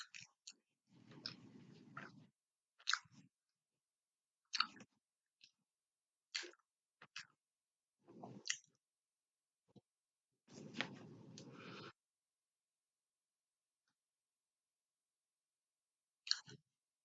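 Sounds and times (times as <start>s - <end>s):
person chewing food: 0.0s - 3.4s, 4.4s - 5.6s, 6.3s - 7.4s, 8.0s - 8.8s.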